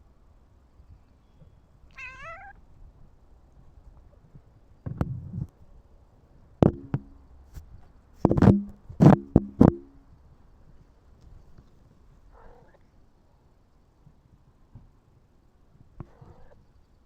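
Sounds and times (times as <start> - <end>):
sharp knocks with hollow ring: 6.6 - 7.2, 8.2 - 10.0.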